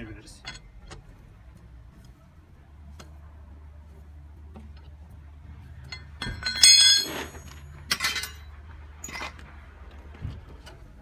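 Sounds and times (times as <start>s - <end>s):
low steady hum: 0.0s - 11.0s
steel tools clanking: 0.3s - 1.1s, 5.8s - 9.4s.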